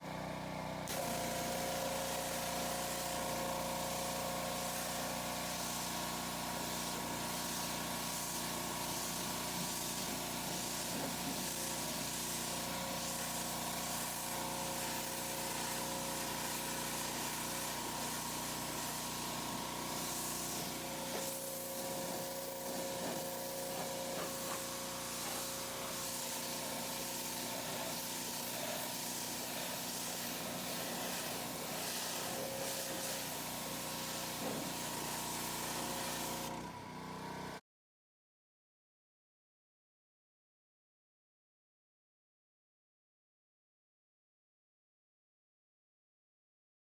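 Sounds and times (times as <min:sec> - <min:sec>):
pressure washer machine whine: 0:00.0 - 0:37.6
pressure washer jet spraying: 0:00.9 - 0:36.5.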